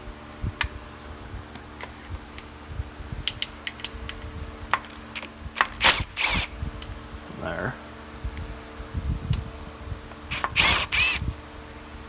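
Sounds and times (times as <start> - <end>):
steady low hum: 0.0 - 12.0
socket wrench clicking: 10.3 - 11.2.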